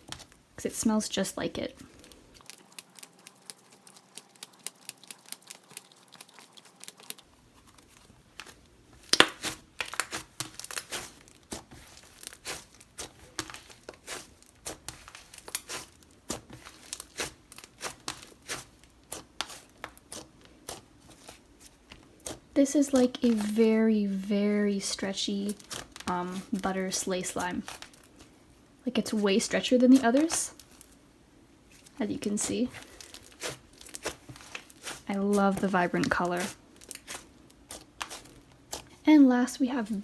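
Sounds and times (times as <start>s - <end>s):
slime squished by hand: 1.8s - 23.7s, 25.4s - 28.3s, 31.7s - 39.0s.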